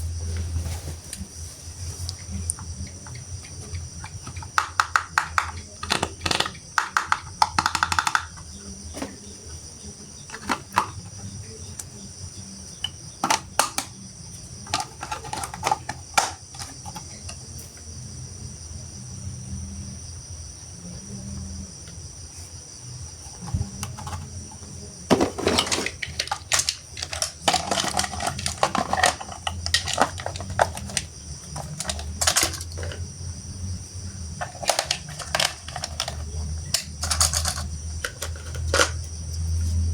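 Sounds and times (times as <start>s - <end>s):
faint steady hum: 0.0s - 39.9s
plastic toy parts clicking: 4.0s - 8.4s, 10.3s - 10.9s, 14.6s - 17.1s, 25.1s - 33.0s, 34.4s - 39.0s.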